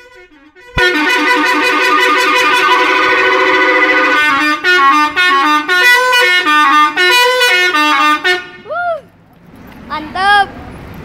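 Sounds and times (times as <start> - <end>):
musical air horns playing a tune: 0.0 - 8.7.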